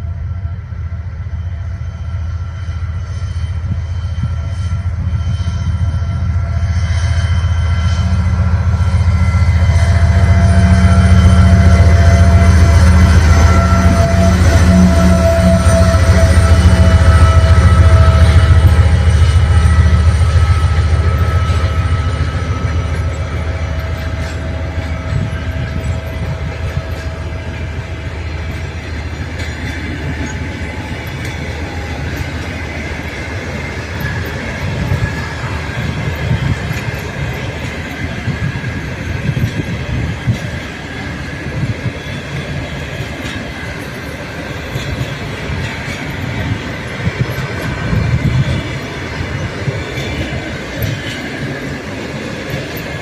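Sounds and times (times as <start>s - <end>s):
train wheels knocking on rail joints: 7.2s - 53.0s.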